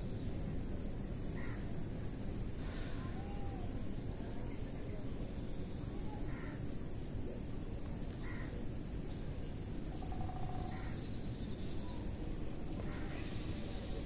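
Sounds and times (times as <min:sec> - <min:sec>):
low background noise: 0:00.0 - 0:14.0
bird calling: 0:09.9 - 0:12.2.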